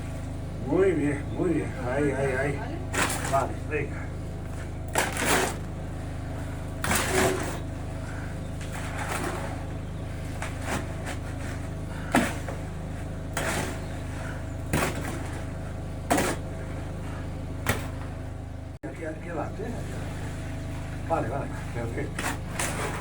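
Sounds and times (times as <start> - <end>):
machine motor droning: 0.0 - 23.0
knocks and scrapes from hand work: 4.9 - 5.7, 6.8 - 7.7, 10.3 - 15.5, 16.1 - 16.5.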